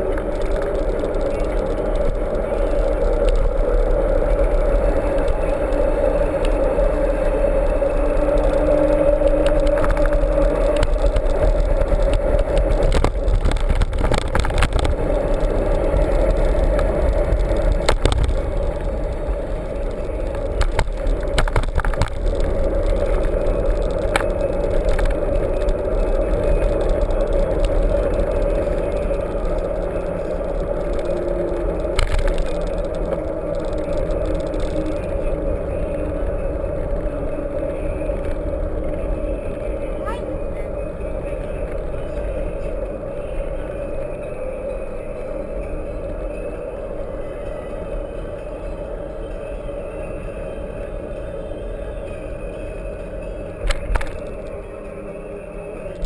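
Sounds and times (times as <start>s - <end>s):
bike rattles and knocks: 0.0s - 35.2s, 53.6s - 54.5s
bike rumbling over rough ground: 0.0s - 43.8s.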